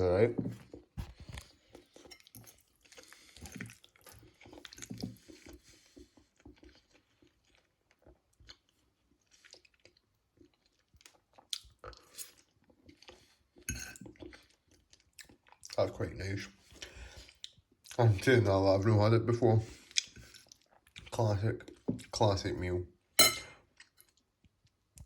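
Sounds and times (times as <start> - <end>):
chewing with wet crunches: 0.7 - 16.0, 16.6 - 18.3, 19.7 - 21.9.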